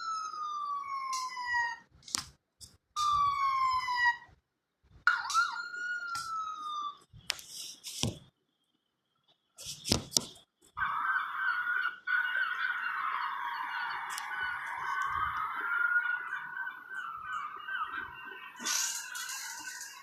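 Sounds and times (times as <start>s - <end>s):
siren falling wails: 5.1s - 7.1s, 10.8s - 20.0s.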